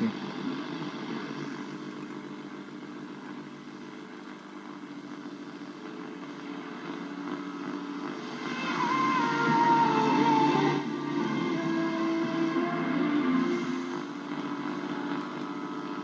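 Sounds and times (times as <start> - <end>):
radio static hum and hiss: 0.0 - 16.0
radio station coming through: 8.1 - 14.5.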